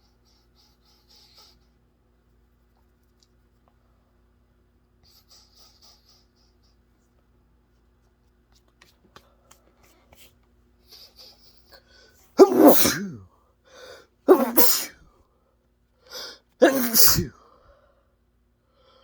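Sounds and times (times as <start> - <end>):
person sneezing: 12.4 - 13.2, 14.3 - 15.0, 16.1 - 17.4.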